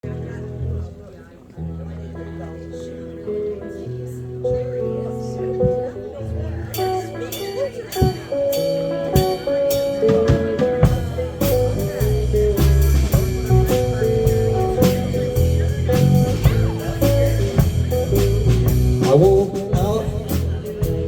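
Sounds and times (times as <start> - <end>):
bass guitar: 0.0 - 21.0
guitar holding notes: 0.0 - 21.0
drum kit steady beat: 6.7 - 21.0.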